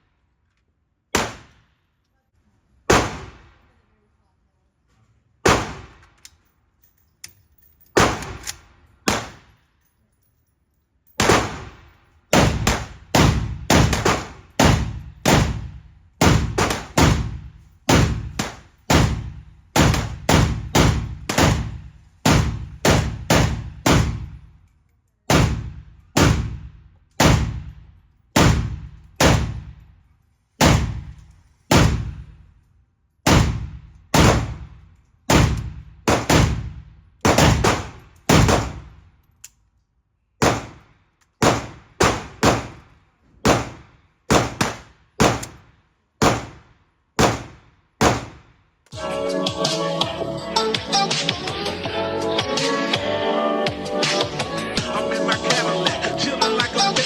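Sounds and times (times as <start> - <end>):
rifle shots with ringing echo: 1.1 - 1.7, 2.9 - 3.7, 5.4 - 6.1, 8.0 - 9.7, 11.2 - 24.6, 25.3 - 29.8, 30.6 - 32.5, 33.2 - 39.0, 40.4 - 48.5.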